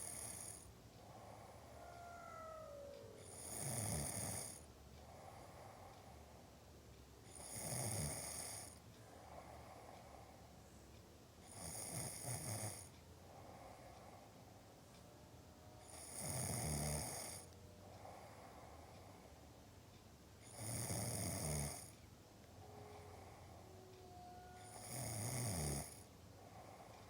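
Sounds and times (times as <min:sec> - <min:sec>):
loud snores with low rattle: 0:00.0 - 0:01.7, 0:03.2 - 0:04.6, 0:07.3 - 0:08.8, 0:11.4 - 0:12.9, 0:15.8 - 0:19.2, 0:20.4 - 0:22.0, 0:24.5 - 0:26.9
quiet breathing: 0:00.0 - 0:27.0.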